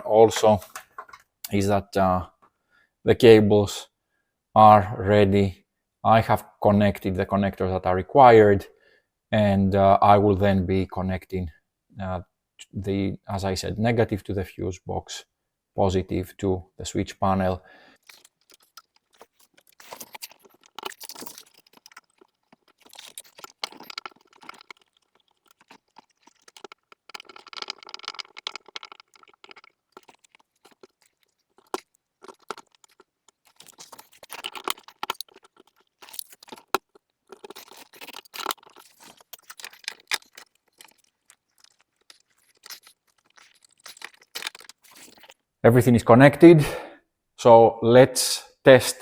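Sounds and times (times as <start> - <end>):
rustling: 17.8 - 45.4
hands handling electrical cables: 18.0 - 45.4.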